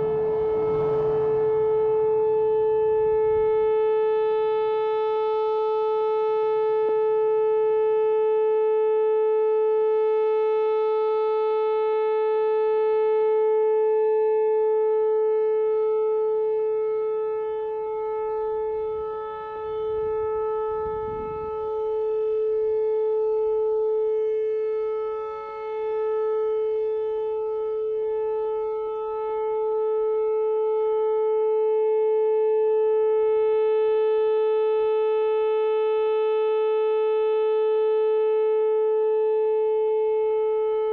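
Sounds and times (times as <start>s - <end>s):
low rumble: 0.0s - 4.0s
tornado warning siren steady pitch: 0.0s - 40.9s.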